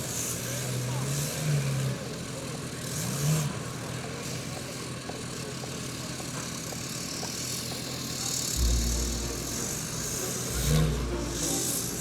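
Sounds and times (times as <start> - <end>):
off-road vehicle engine running: 0.1 - 12.0
deep bass music: 8.6 - 12.0.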